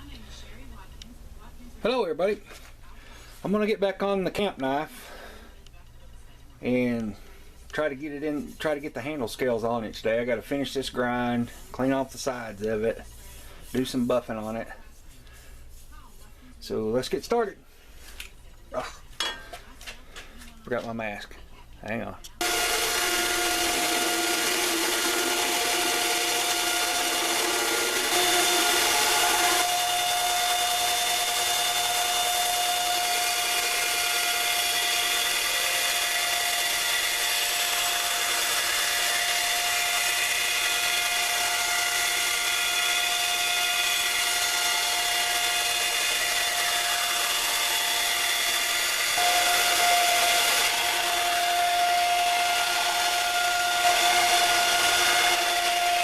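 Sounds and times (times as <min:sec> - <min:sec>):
belt grinder motor whine: 0:22.4 - 0:56.0.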